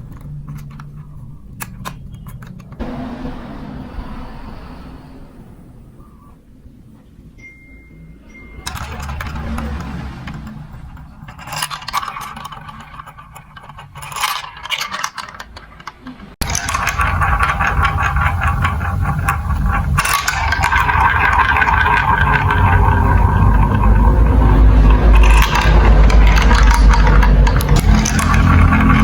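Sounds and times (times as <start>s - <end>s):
low rumble: 2.8s - 13.4s, 16.2s - 29.0s
marbles rolling and clattering: 8.6s - 29.0s.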